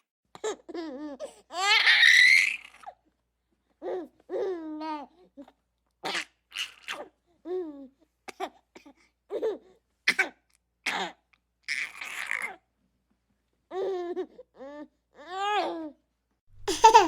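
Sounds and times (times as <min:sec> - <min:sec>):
baby laughing: 0:16.6 - 0:17.0.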